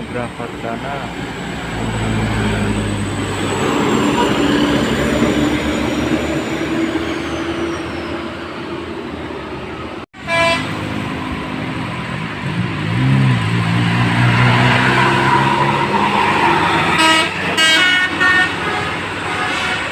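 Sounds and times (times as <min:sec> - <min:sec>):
bus and road traffic: 0:00.0 - 0:19.9
musical air horn toot: 0:10.2 - 0:10.8, 0:17.0 - 0:19.9.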